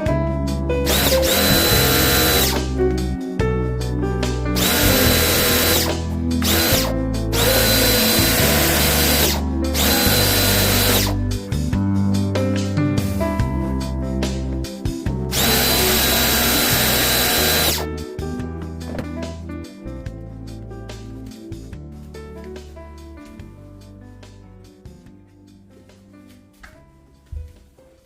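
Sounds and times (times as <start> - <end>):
background music: 0.0 - 28.0
power drill whining: 0.9 - 2.6, 4.6 - 11.2, 15.3 - 17.8.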